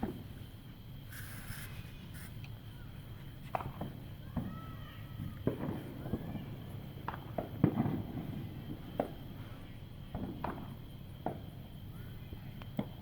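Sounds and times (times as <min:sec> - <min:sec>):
distant fireworks bangs: 0:03.4 - 0:11.6.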